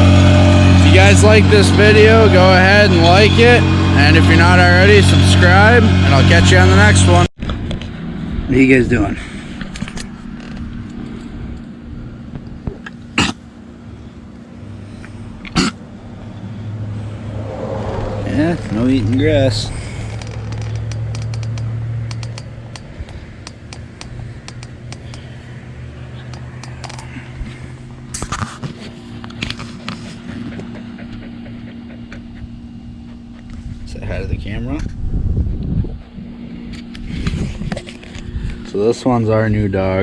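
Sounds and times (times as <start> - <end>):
steady low hum: 0.0 - 40.0
vehicle engine idling: 0.0 - 40.0
dog sneezing: 13.1 - 13.4, 15.5 - 15.8
scattered clicks: 20.2 - 25.3.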